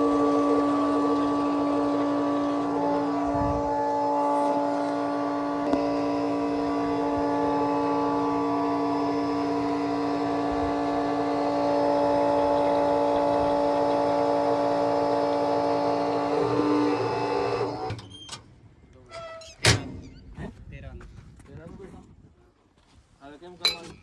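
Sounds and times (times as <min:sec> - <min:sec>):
excavator engine and hydraulics whining: 0:00.0 - 0:18.5.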